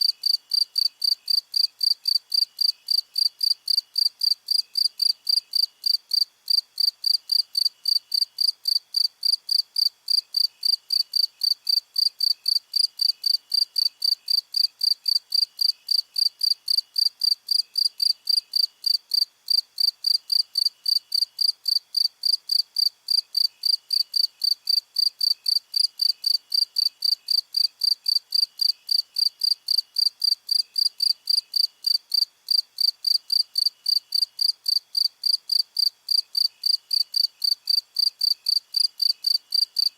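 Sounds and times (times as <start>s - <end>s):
cricket chirping: 0.0s - 39.9s
fainter crickets chirping: 0.0s - 39.9s.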